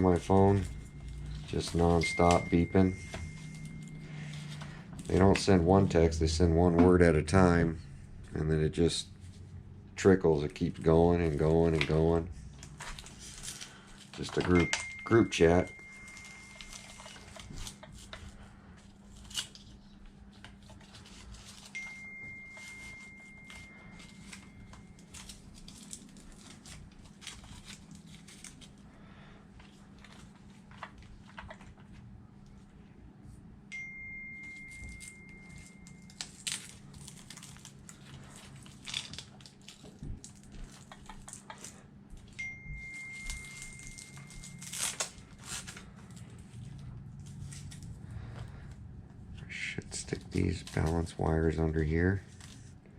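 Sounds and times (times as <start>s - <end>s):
low steady hum: 0.0s - 52.9s
phone notification beep: 0.7s - 4.4s
hands handling batteries and wires: 10.6s - 18.4s, 20.4s - 28.7s.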